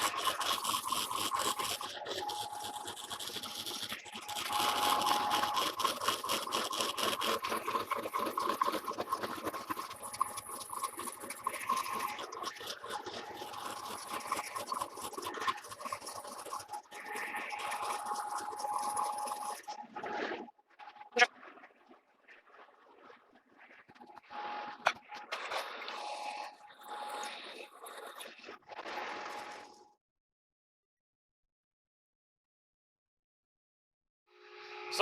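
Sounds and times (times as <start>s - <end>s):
lathe cutting steel: 0.0s - 19.9s, 24.1s - 28.3s, 34.7s - 35.0s.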